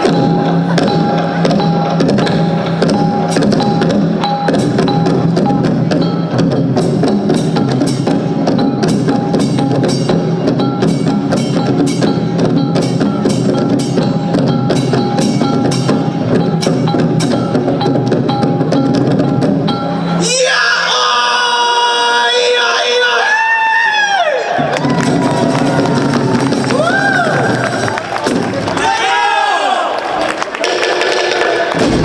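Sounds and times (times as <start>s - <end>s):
clicking percussion beat: 0.0s - 20.1s, 24.7s - 28.9s, 30.2s - 32.0s
bell-like tones: 0.0s - 20.2s.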